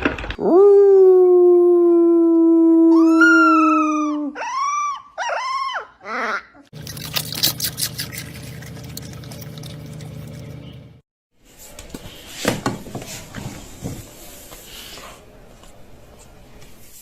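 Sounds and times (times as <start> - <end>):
steady low hum: 6.8 - 11.0.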